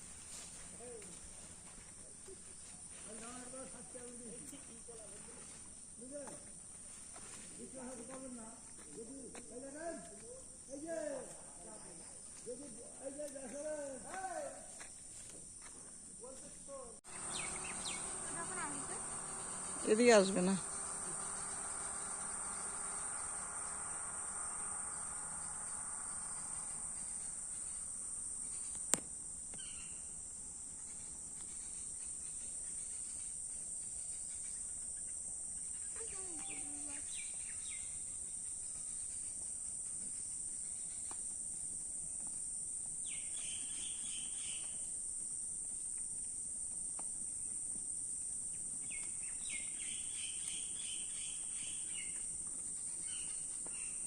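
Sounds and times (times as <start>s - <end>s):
high-pitched insect drone: 17.1s - 45.8s, 48.5s - 54.0s.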